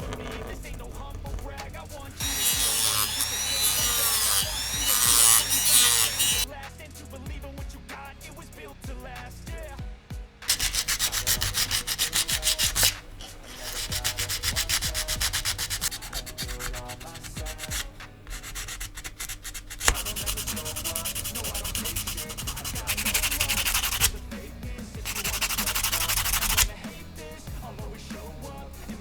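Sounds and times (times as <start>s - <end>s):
rapid sanding strokes: 0.0s - 6.5s, 10.4s - 29.0s.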